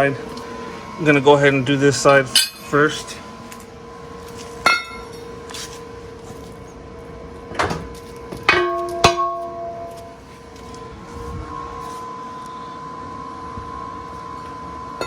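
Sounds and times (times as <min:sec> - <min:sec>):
steady hum: 0:00.0 - 0:15.0
steel parts clanking: 0:02.3 - 0:03.7, 0:07.6 - 0:10.2.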